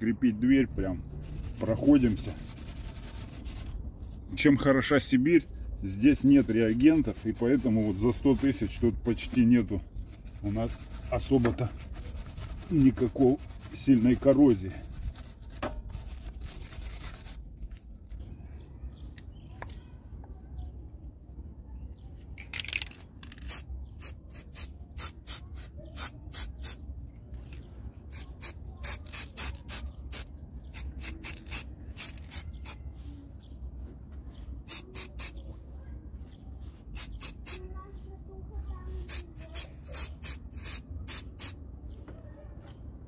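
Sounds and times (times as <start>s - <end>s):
wire brush scrubbing metal: 0.7s - 4.7s, 5.8s - 17.4s.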